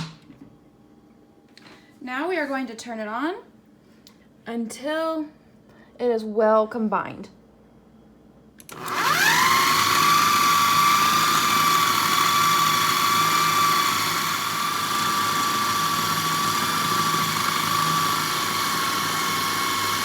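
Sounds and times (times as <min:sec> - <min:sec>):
food processor motor whining: 0:08.6 - 0:20.0.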